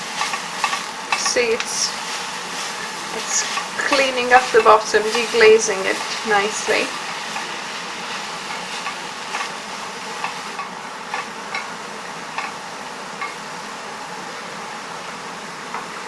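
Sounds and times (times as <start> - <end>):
vegetables sizzling in a pan: 0.0 - 16.0
spoon scraping and tapping pan: 12.4 - 12.6.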